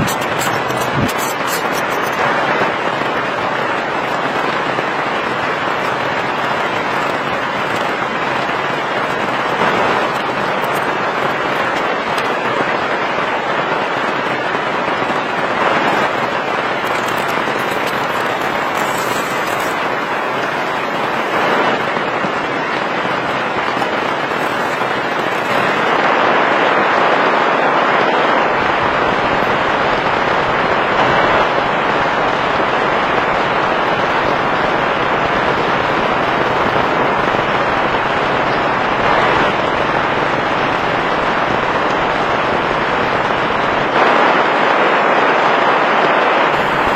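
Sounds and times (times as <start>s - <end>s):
heavy rain falling: 0.0s - 46.9s.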